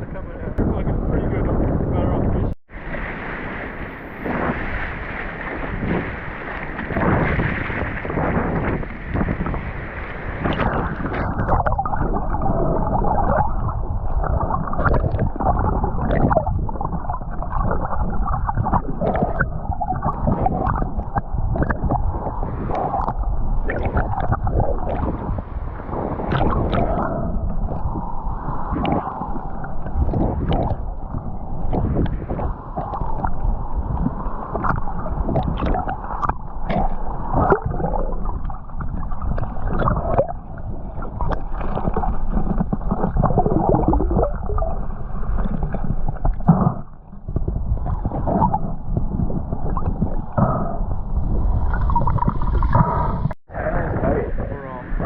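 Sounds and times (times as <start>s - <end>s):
muffled water sloshing: 0.0s - 55.0s
underwater knocks and bumps: 5.5s - 9.8s, 10.4s - 25.4s, 26.3s - 53.4s.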